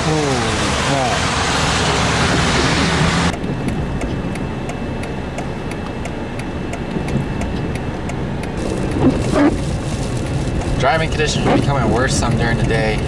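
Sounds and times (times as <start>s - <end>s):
road and engine rumble: 0.0s - 13.0s
turn signal ticking: 3.3s - 9.6s, 12.0s - 13.0s.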